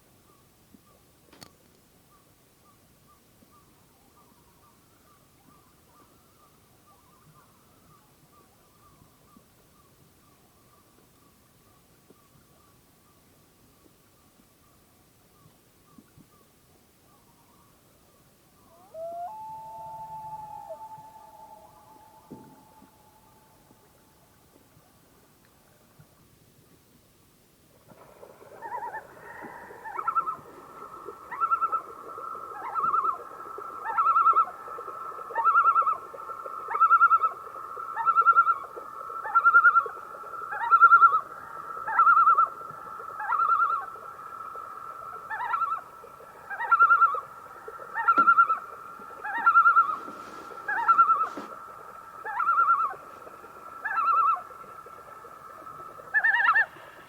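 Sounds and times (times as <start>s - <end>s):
low steady hiss: 0.0s - 57.0s
loon calling: 18.7s - 24.3s, 28.5s - 57.0s.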